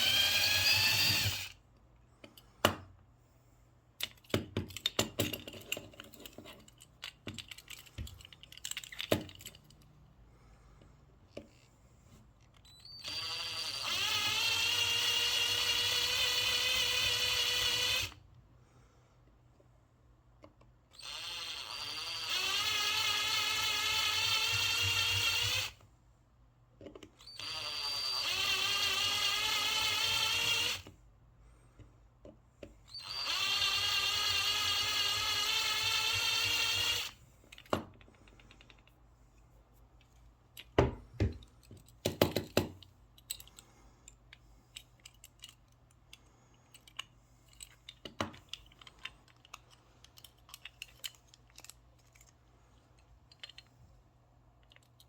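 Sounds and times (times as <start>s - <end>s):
electric drill whining: 0.0s - 1.6s, 12.7s - 18.2s, 21.0s - 25.8s, 27.2s - 30.9s, 32.9s - 37.2s
small parts knocking: 4.0s - 9.9s, 40.0s - 52.4s, 53.0s - 53.8s.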